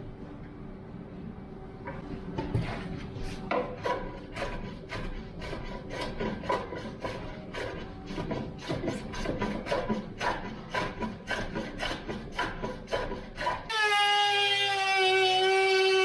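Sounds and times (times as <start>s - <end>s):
hand sanding wood: 2.7s - 13.7s.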